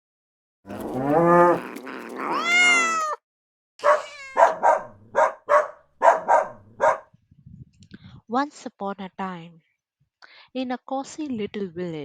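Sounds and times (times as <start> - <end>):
cat meowing: 1.6 - 3.2, 3.8 - 4.6
dog barking: 3.8 - 7.2.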